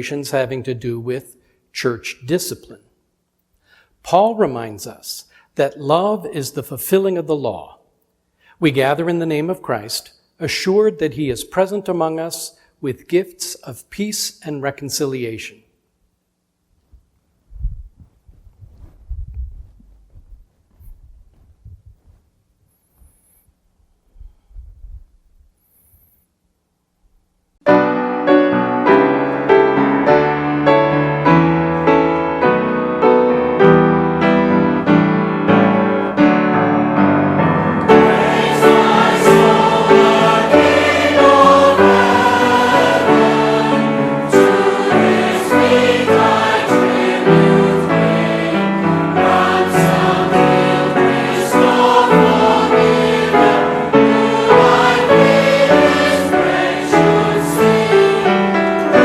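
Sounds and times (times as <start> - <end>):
keyboard playing chords: 27.6 - 59.0.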